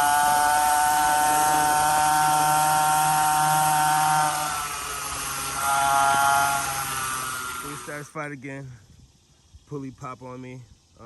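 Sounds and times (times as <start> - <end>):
dirt bike engine revving: 0.0 - 8.1.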